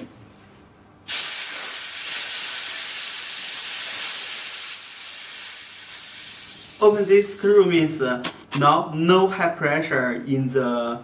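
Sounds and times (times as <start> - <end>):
high-pressure air hissing: 1.1 - 8.6.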